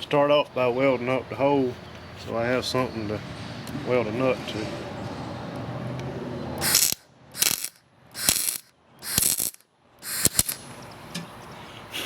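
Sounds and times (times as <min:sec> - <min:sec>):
arc welder crackling: 0:06.6 - 0:11.0.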